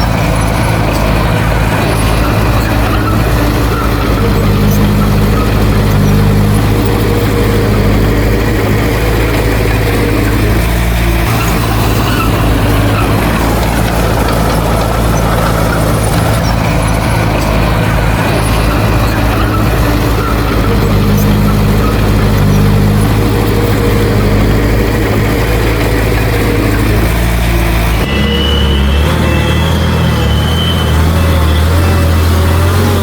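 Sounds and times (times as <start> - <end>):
heavy diesel engine running: 0.0 - 33.0.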